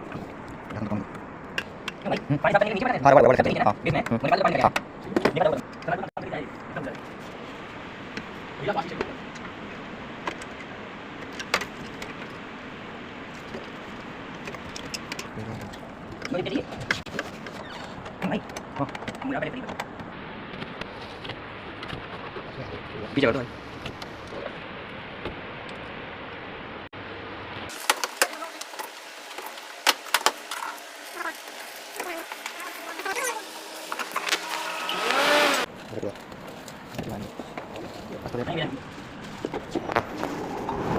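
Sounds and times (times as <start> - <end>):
air cooler whirring: 27.0 - 40.9
air cooler whooshing: 38.4 - 40.9.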